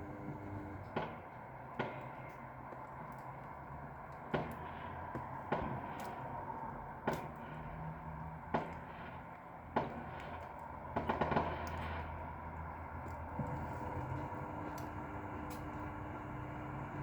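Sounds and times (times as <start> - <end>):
steady low hum: 0.0 - 0.9.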